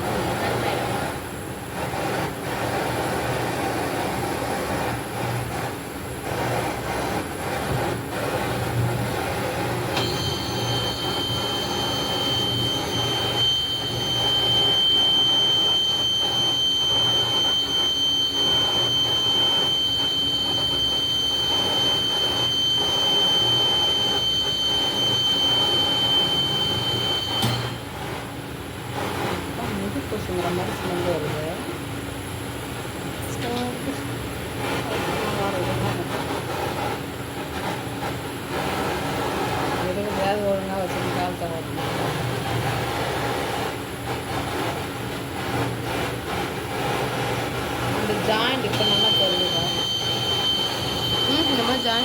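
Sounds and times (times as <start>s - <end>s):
high steady whistle: 9.9s - 27.8s, 48.6s - 52.0s.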